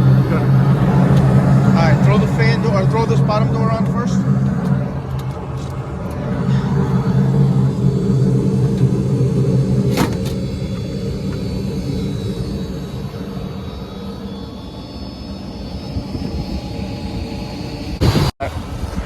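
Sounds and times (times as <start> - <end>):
blower rumble and hum: 0.0 - 19.0.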